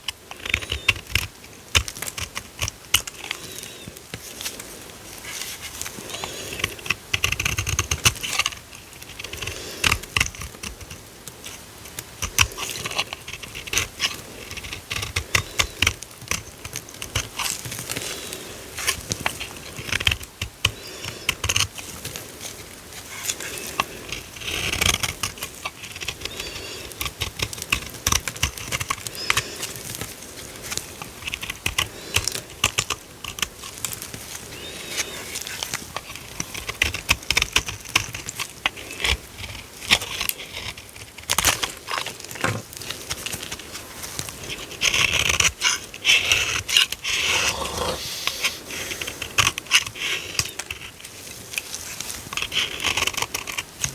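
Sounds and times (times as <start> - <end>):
dry soap crackling and crunching: 0.0 - 53.9.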